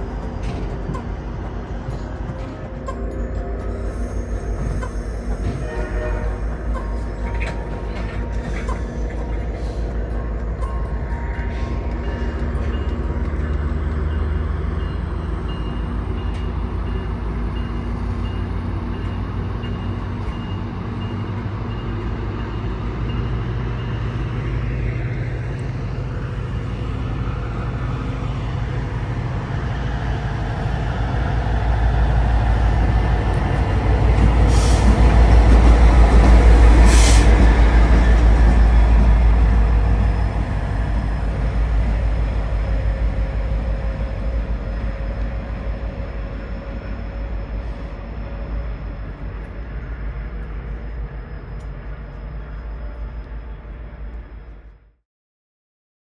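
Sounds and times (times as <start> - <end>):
train rumbling by: 0.0 - 54.9
air hiss bursts: 36.8 - 37.4.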